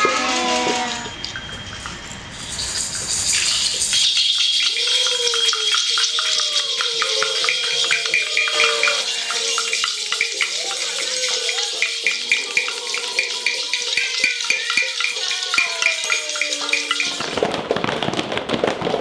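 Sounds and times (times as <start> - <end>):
steady hiss: 0.2 - 4.7
held note: 7.3 - 17.4.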